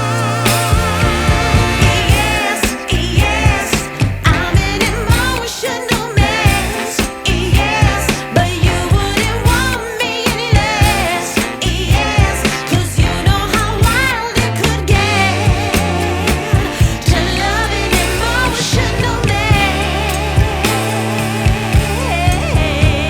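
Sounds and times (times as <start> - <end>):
heavy bass beat: 0.0 - 5.5, 6.2 - 9.8, 10.6 - 23.0
music with singing through speakers: 0.0 - 23.0.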